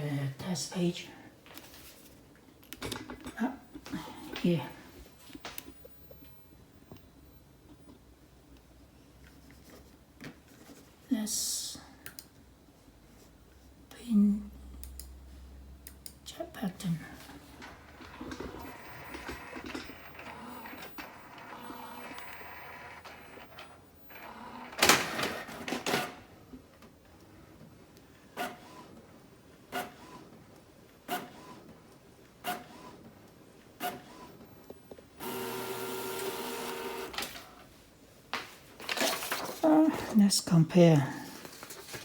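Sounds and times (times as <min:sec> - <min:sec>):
printer motors whirring: 0:17.4 - 0:26.2, 0:35.2 - 0:37.6
printer clatter: 0:17.5 - 0:23.7.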